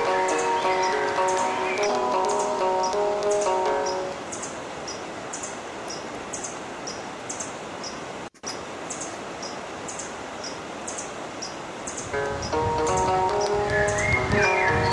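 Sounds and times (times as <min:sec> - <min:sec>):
music: 0:00.0 - 0:04.2, 0:12.2 - 0:14.9
flowing river water: 0:00.0 - 0:14.9.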